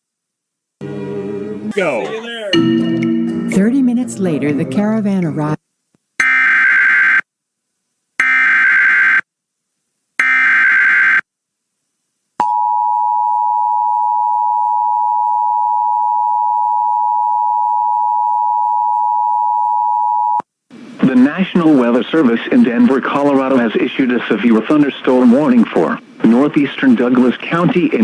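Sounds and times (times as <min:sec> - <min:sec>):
two-tone attention signal: 0:01.8 - 0:03.6.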